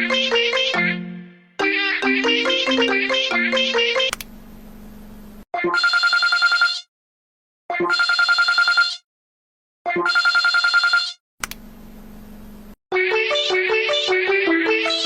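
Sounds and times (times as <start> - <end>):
telephone bell ringing: 5.7 - 6.9, 7.9 - 9.0, 10.0 - 11.2.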